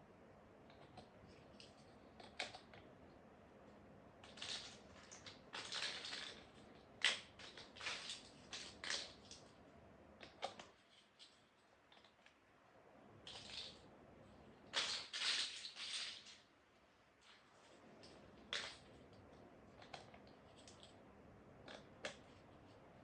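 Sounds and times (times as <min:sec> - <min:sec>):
plastic bricks clicking and rattling: 0:04.2 - 0:09.3.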